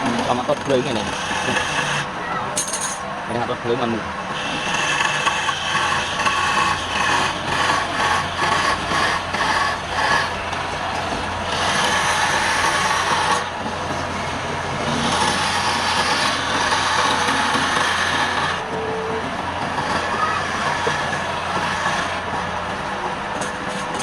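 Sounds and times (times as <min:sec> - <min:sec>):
wood lathe motor hum: 0:00.0 - 0:02.1, 0:04.3 - 0:24.0
turning tool scraping wood: 0:00.2 - 0:02.1, 0:04.4 - 0:10.4, 0:11.5 - 0:13.5, 0:14.9 - 0:18.6
cutting hiss: 0:04.3 - 0:10.3.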